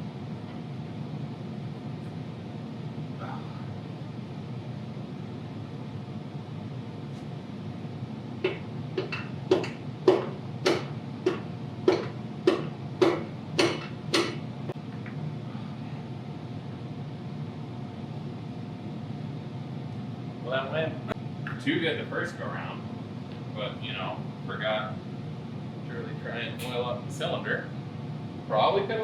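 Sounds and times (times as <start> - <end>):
steady low hum: 0.0 - 29.0
piston being tapped into cylinder: 8.4 - 14.4.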